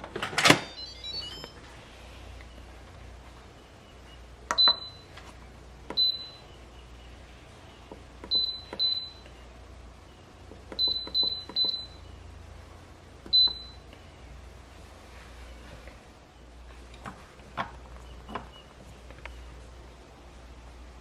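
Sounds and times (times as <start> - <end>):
short high beeps: 0.6 - 1.6
keypad button clicks: 10.7 - 11.8.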